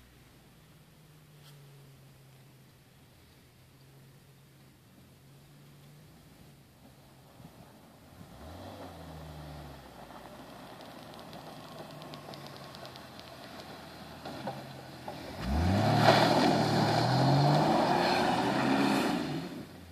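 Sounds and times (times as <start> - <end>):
car engine revving: 7.4 - 19.9.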